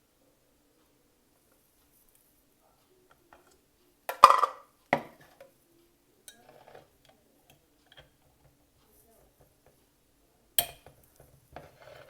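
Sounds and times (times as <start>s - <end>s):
kitchenware and glassware clinking: 4.1s - 5.4s, 6.3s - 6.9s, 10.6s - 12.0s.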